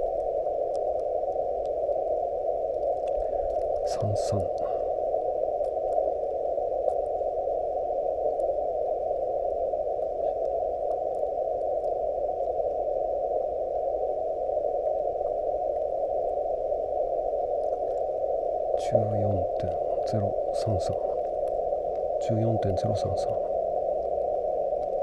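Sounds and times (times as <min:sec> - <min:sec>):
faint ticks: 0:00.0 - 0:04.9, 0:05.5 - 0:07.2, 0:08.3 - 0:08.6, 0:09.9 - 0:12.8, 0:17.6 - 0:18.1, 0:22.8 - 0:25.0
radio receiver hiss: 0:00.0 - 0:25.0.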